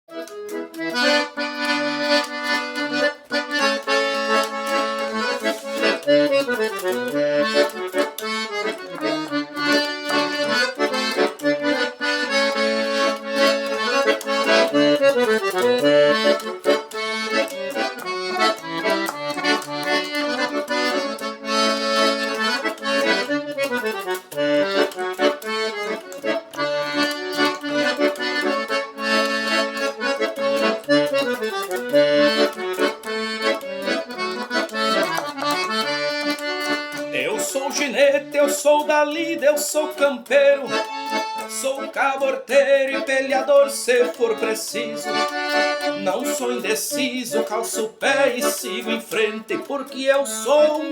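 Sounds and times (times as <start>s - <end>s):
accordion melody: 0.1s - 50.9s.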